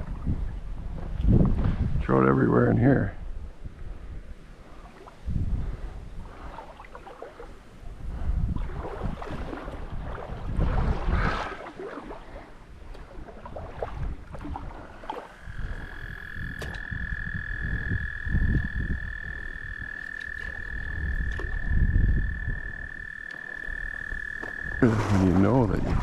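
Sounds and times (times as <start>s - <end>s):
wind buffeting microphone: 0.0s - 26.0s
frog trilling: 15.4s - 25.1s.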